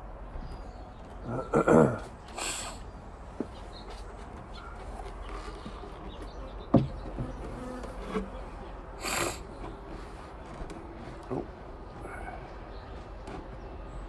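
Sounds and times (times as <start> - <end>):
honeybees buzzing: 5.0 - 10.2.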